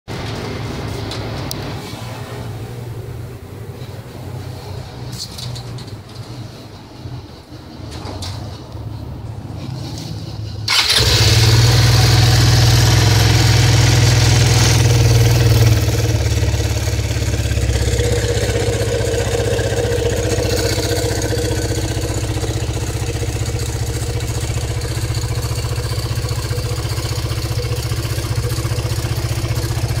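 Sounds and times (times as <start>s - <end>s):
scooter engine running: 10.7s - 30.0s.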